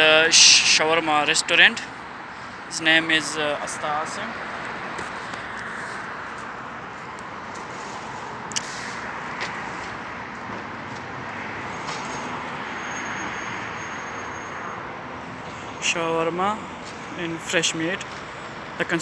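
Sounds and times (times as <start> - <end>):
steady background noise: 0.0 - 19.0
sharp click: 8.5 - 8.8.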